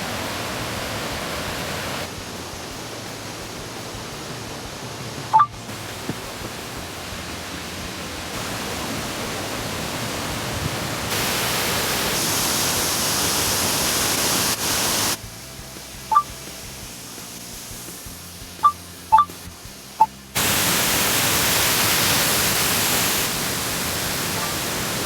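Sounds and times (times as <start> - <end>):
stream rushing: 0.0 - 25.0
water hiss: 0.0 - 25.0
short high blip: 5.3 - 5.6, 16.1 - 16.3.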